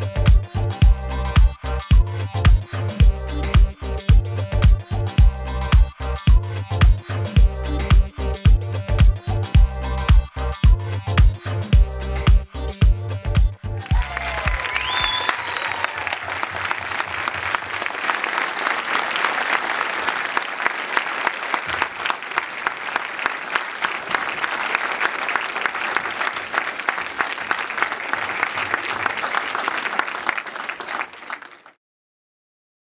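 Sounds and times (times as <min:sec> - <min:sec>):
audience applauding: 0:13.8 - 0:31.8.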